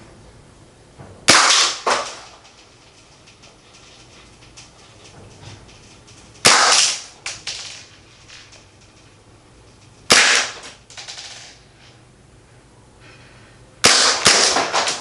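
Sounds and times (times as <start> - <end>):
airsoft pistol shots: 1.3 - 2.4, 6.4 - 7.2, 10.1 - 10.8, 13.8 - 15.0.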